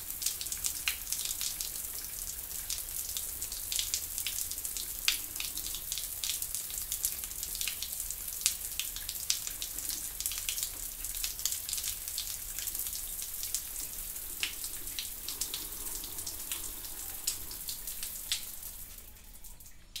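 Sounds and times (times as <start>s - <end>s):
shower water spraying: 13.4s - 19.0s.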